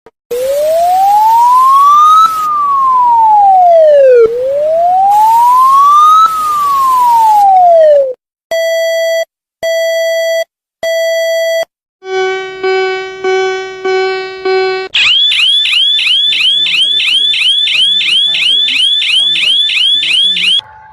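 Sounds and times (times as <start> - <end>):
electronic alarm wail: 0.3 - 8.1, 12.0 - 20.9
long steady beeps: 12.1 - 20.6.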